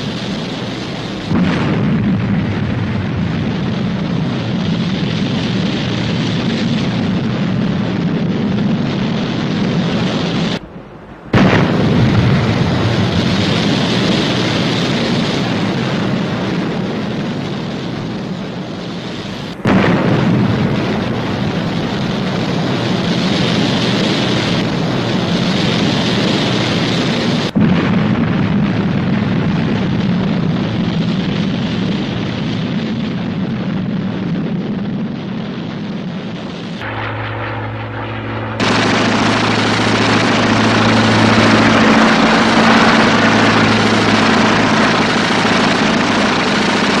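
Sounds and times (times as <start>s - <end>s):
explosions: 0.0s - 47.0s
gunfire: 0.6s - 3.7s, 11.3s - 14.4s, 19.5s - 22.9s, 36.7s - 47.0s
low engine hum: 36.3s - 47.0s.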